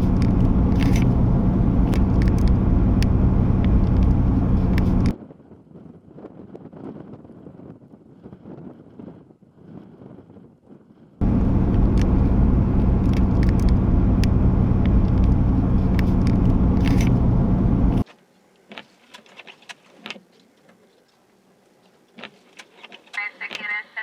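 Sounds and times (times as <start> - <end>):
loud vehicle rumble: 0.0 - 5.1, 11.2 - 18.0
light clicks: 11.2 - 18.0.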